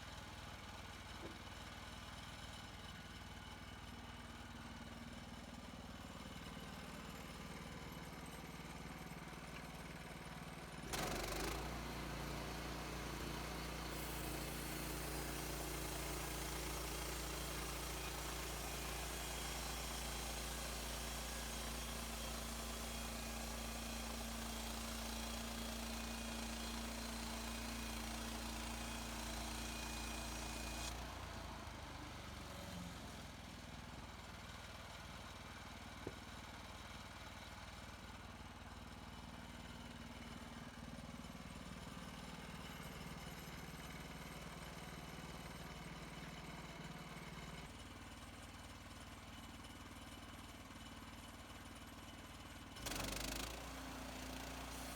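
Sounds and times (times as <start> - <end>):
sawmill engine running: 9.9 - 31.2, 52.8 - 54.9.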